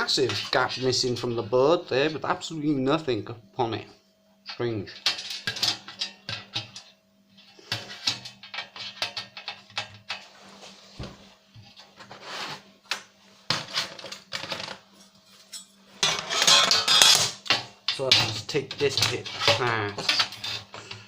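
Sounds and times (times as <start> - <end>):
faint steady hum: 0.0 - 21.0
plastic and metal parts clattering: 13.5 - 14.8, 16.0 - 21.0.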